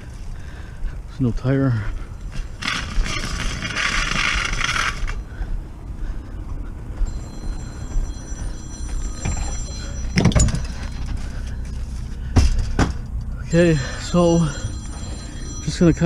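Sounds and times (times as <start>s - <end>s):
faint high whine: 13.4s - 16.0s.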